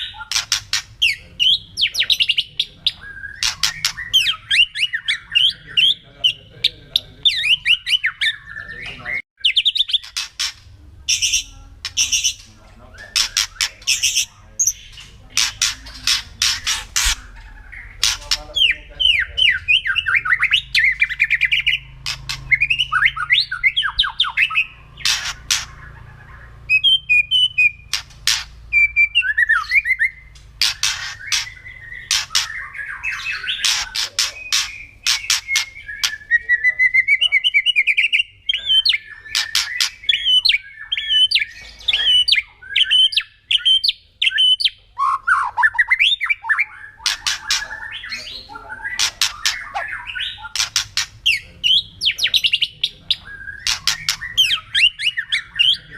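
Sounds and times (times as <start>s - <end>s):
bird cracking rattling calls: 0.0s - 1.2s, 3.2s - 4.4s, 9.7s - 18.7s, 20.1s - 23.4s, 24.1s - 26.8s, 27.7s - 28.7s, 29.7s - 36.2s, 48.8s - 51.5s, 53.5s - 54.9s
bird singing whistled phrases: 28.7s - 30.3s.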